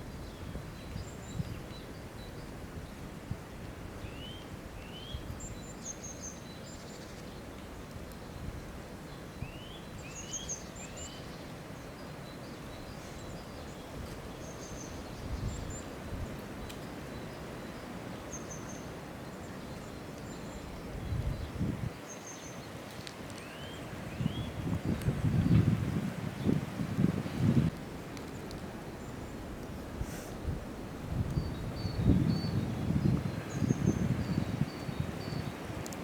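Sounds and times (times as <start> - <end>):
songbirds whistling: 23.4 - 24.7
low rumble of outdoor air: 23.4 - 35.6.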